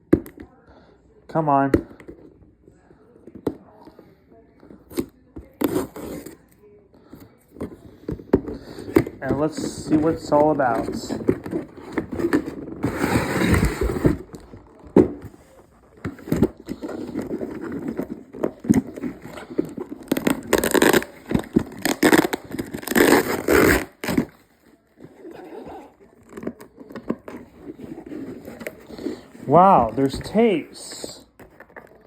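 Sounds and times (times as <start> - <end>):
cardboard and tape tearing: 4.9 - 6.4, 8.4 - 32.0.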